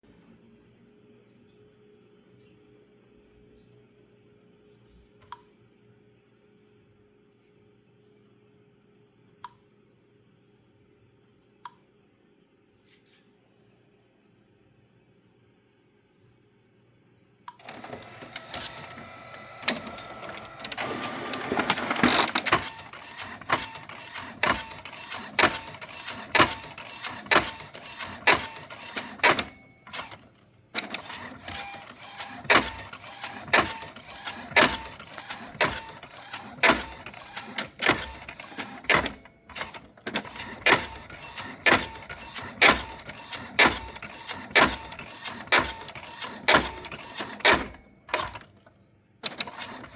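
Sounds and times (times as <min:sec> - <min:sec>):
printer mechanical running: 0:17.6 - 0:49.9
sharp knock in printer: 0:30.8 - 0:48.5.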